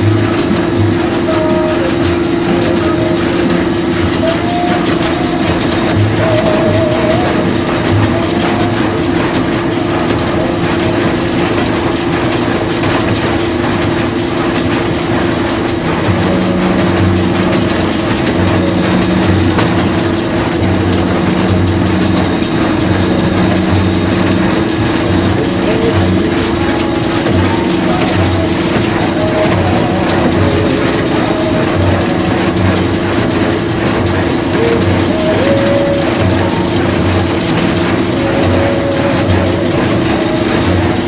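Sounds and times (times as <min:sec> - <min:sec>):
low rhythmic pulsing: 0:00.0 - 0:41.0
mechanical clatter: 0:00.0 - 0:41.0
tractor and machinery humming: 0:00.0 - 0:41.0.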